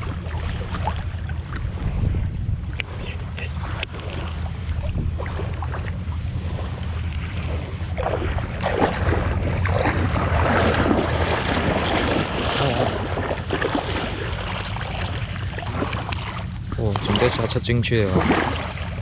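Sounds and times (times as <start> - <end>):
water splashing and sloshing: 0.0 - 19.0
wind on microphone: 0.0 - 19.0.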